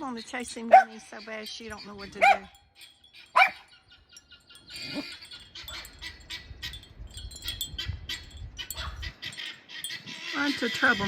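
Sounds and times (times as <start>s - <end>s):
dog barking: 0.7s - 1.0s, 2.2s - 2.5s, 3.4s - 3.6s, 8.7s - 9.1s
guinea fowl chattering: 7.8s - 11.0s.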